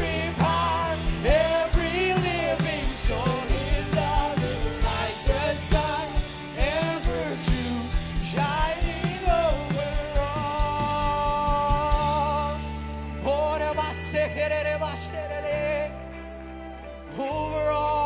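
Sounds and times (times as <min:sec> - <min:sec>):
drums keeping a steady beat: 0:00.0 - 0:12.8
worship band music: 0:00.0 - 0:18.0.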